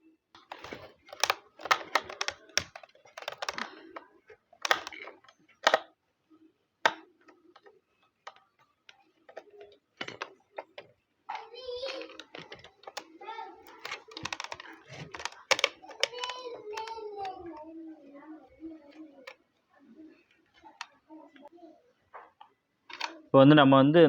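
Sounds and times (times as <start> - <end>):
screwdriver clicking on plastic parts: 0.4 - 6.0, 6.8 - 10.9, 11.8 - 17.7, 22.9 - 23.2.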